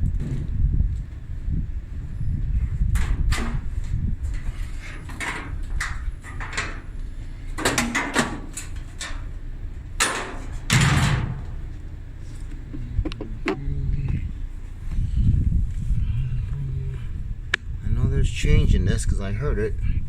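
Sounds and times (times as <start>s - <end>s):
sheet metal panels scraping: 3.0s - 9.3s.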